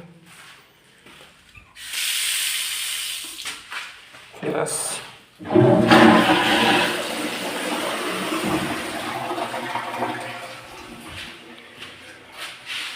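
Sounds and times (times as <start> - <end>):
toilet flushing: 5.4 - 12.4.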